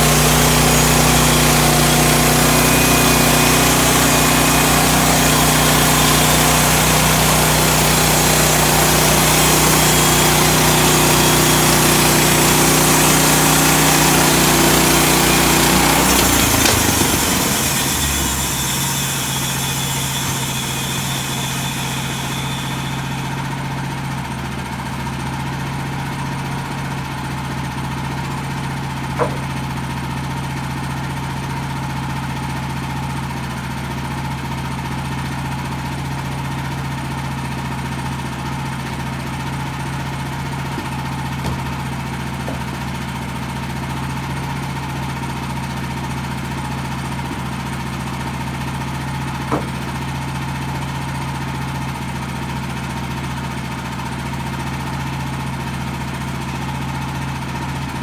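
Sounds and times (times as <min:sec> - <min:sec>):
high whine: 0:00.0 - 0:23.9
sawmill gas engine running: 0:00.0 - 0:58.0.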